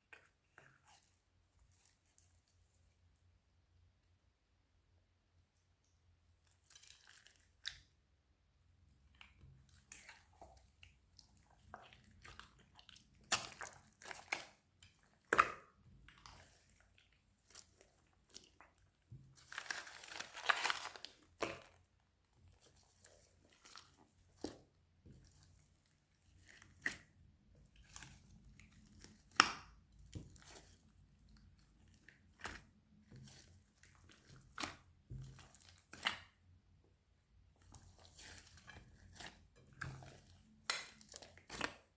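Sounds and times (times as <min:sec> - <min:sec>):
slime crunching: 0:09.7 - 0:21.8, 0:22.5 - 0:36.4, 0:37.6 - 0:41.9.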